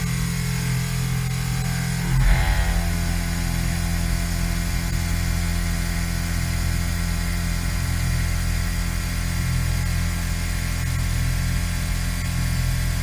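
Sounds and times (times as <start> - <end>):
machine hum: 1.5 - 5.6.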